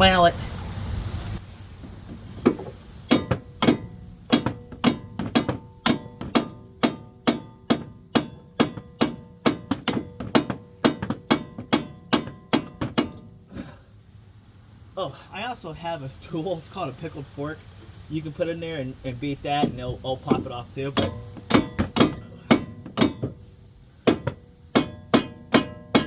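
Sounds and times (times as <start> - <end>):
mallet striking metal with ringing: 24.1 - 26.0.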